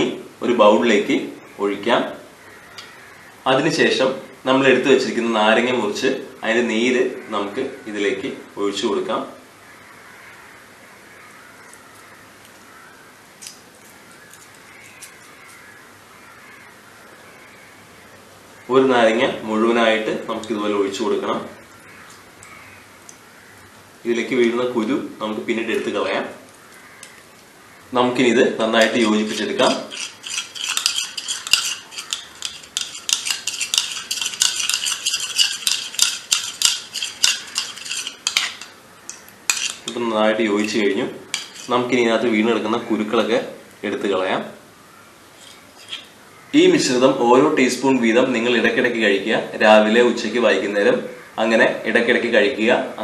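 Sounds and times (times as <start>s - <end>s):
faint bird calls: 1.4s - 3.5s, 9.5s - 13.2s, 13.8s - 18.9s, 21.6s - 23.9s, 26.5s - 28.0s
spoon stirring in a bowl: 28.8s - 41.9s.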